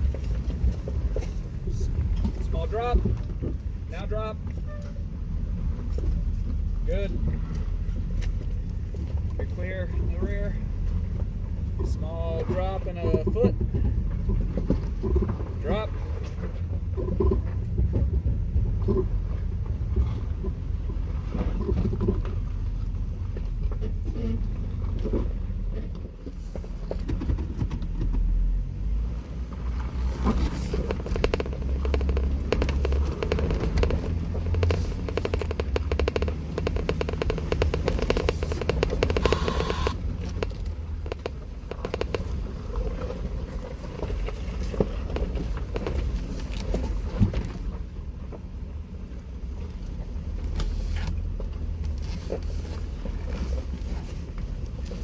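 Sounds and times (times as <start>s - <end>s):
engine running low: 0.0s - 55.0s
tyres crunching on rock: 30.2s - 42.3s.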